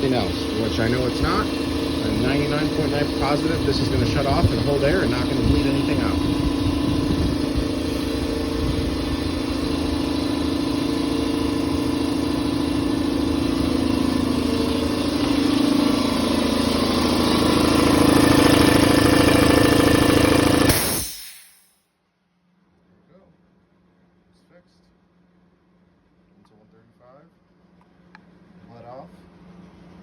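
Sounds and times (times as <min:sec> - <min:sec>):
air compressor running: 0:00.0 - 0:21.7.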